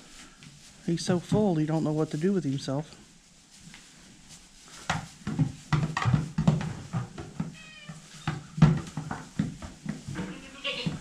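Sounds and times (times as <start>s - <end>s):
goats thumping and knocking: 4.7s - 11.0s
goat crying: 10.2s - 11.0s.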